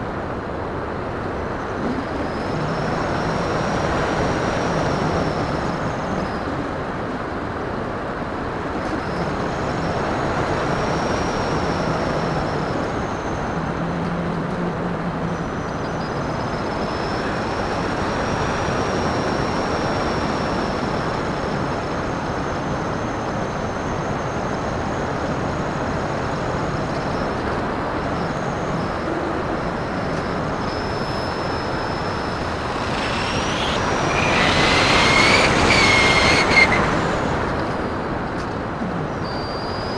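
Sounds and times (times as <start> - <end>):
electric motor whine: 8.6 - 38.3
airflow rushing over camera: 30.2 - 37.8.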